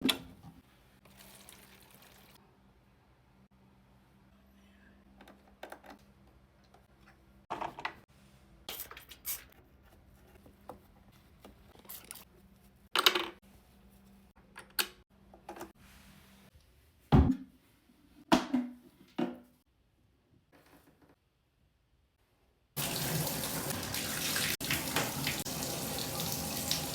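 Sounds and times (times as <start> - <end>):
plastic parts clicking and clattering: 13.0 - 13.4.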